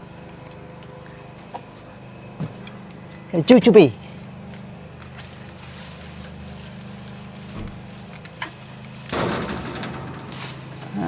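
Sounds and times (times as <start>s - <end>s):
low machine hum: 0.0s - 11.0s
leaves rustling: 3.4s - 11.0s.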